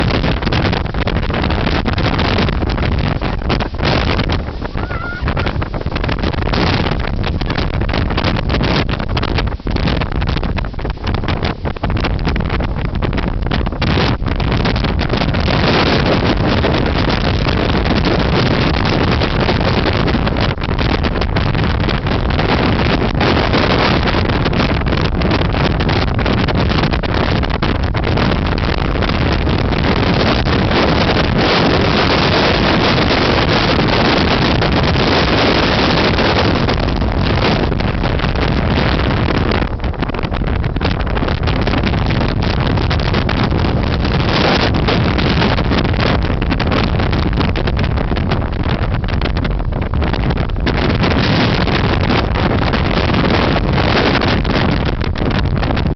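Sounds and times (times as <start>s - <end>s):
strong wind on microphone: 0.0s - 55.9s.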